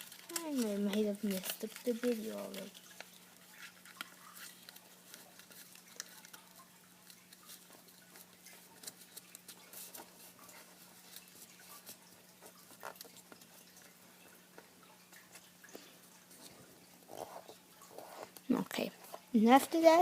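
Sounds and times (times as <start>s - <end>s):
paper being folded: 0.0s - 15.5s.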